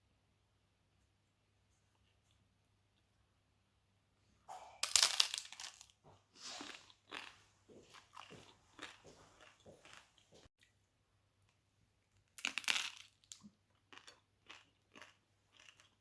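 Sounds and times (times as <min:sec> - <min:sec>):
crunchy tortilla being chewed: 0:05.5 - 0:10.5, 0:11.4 - 0:16.0.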